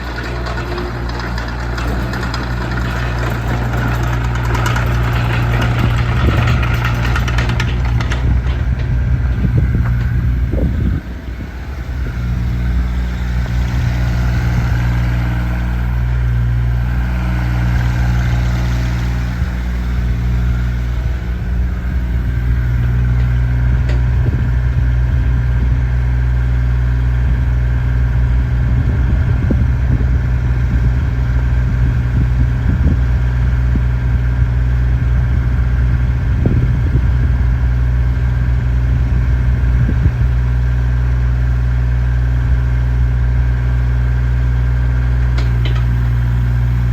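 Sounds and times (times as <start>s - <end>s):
short knocks and clatters: 0.0s - 10.6s, 45.3s - 46.3s
excavator diesel engine idling: 0.0s - 46.9s.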